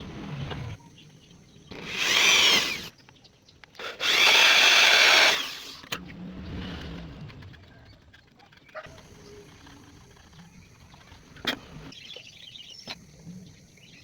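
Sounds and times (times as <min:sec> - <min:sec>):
power tool whining through wood: 0:01.7 - 0:02.9, 0:03.8 - 0:06.0.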